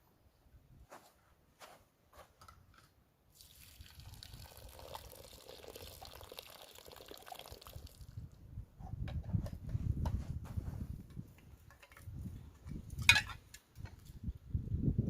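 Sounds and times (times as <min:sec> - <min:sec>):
liquid pouring: 0:03.3 - 0:08.2.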